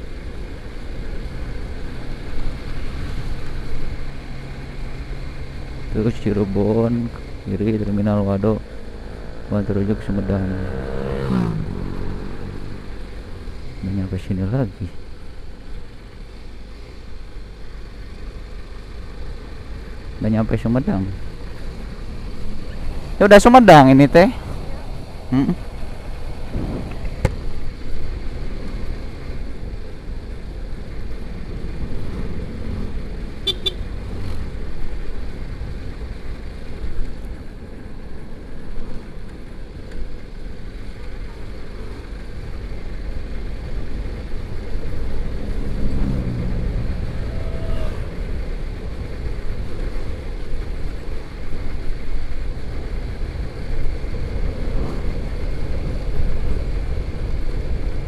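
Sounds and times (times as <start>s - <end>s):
motorcycle engine running: 6.9s - 14.0s, 32.5s - 36.8s
wind rushing on microphone: 24.4s - 27.5s.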